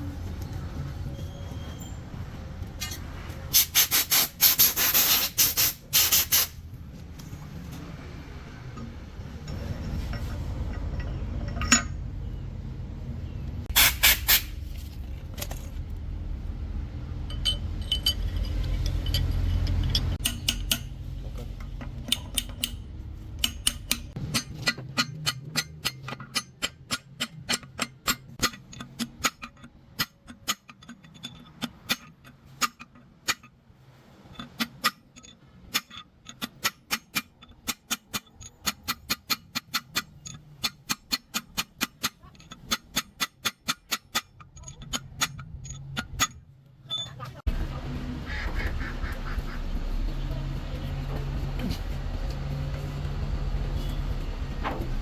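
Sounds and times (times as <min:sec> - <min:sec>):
low machine rumble: 0:14.7 - 0:20.2, 0:47.5 - 0:55.0
sharp metallic clicks: 0:17.3 - 0:21.0, 0:22.0 - 0:30.9.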